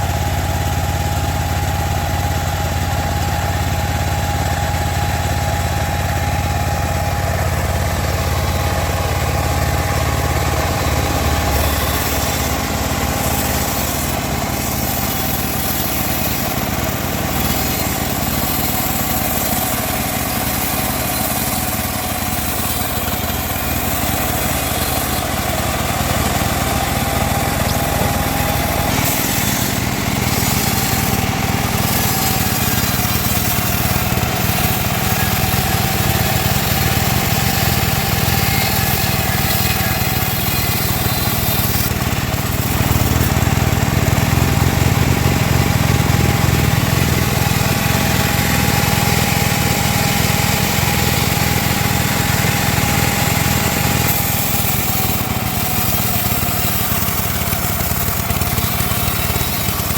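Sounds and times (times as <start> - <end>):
band saw running: 0.0 - 59.9.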